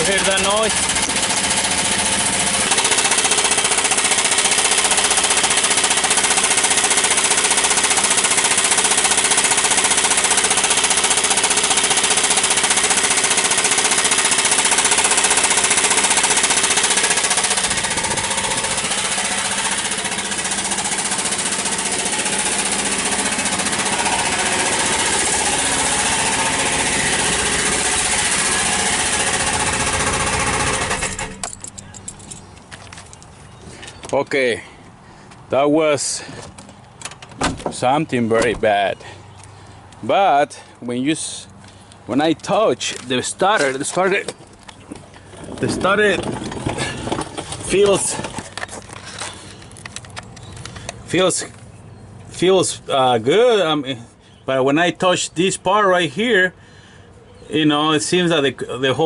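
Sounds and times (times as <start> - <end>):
harsh rapid metallic rattle: 0.0 - 32.4
truck engine running: 0.0 - 33.2.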